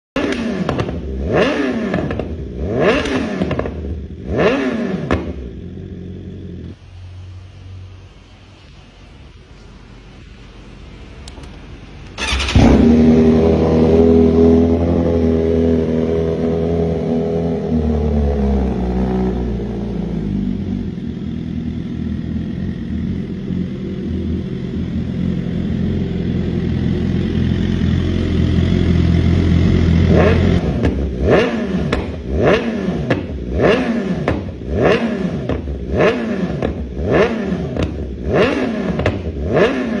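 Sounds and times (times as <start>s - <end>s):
motorcycle engine revving: 0.2s - 6.8s, 12.0s - 40.0s
motorcycle engine starting: 0.2s - 6.8s, 11.2s - 40.0s
motorcycle engine idling: 9.1s - 39.5s.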